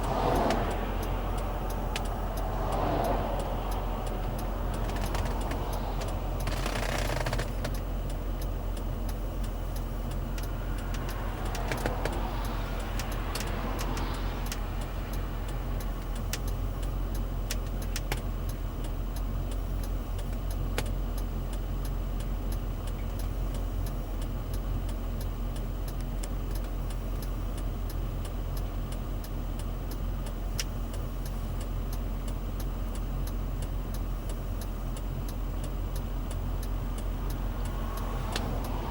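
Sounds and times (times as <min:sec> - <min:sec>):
sharp clicks and knocks: 0:00.0 - 0:02.8, 0:03.4 - 0:14.9, 0:17.5 - 0:18.3, 0:20.2 - 0:21.0
suv engine running: 0:00.0 - 0:38.9.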